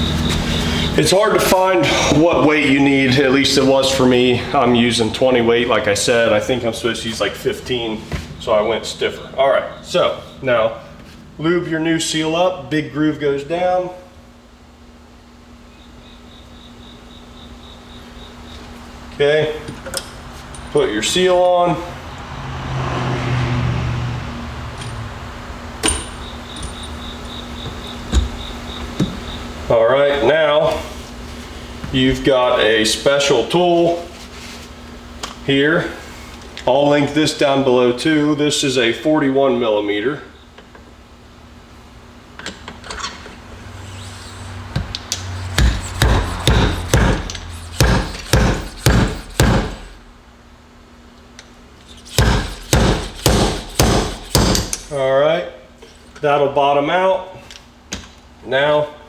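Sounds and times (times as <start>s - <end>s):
sharp metal blows: 24.8s - 27.1s, 45.4s - 50.0s, 52.0s - 55.0s.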